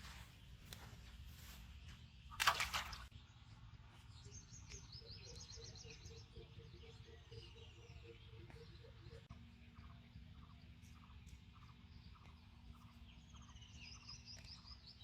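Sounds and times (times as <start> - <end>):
birds chirping: 0.0 - 15.0
low background rumble: 3.0 - 14.2.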